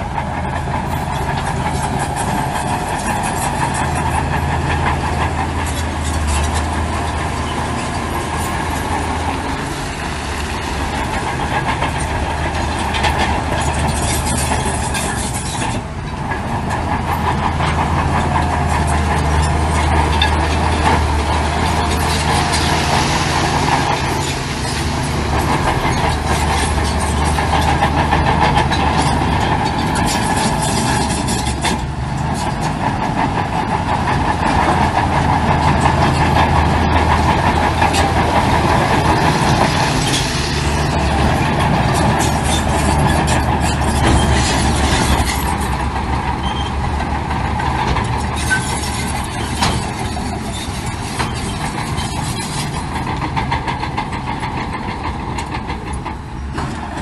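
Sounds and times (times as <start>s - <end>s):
diesel machinery engine drone: 0.0s - 57.0s
metal clanks and knocks: 0.2s - 57.0s.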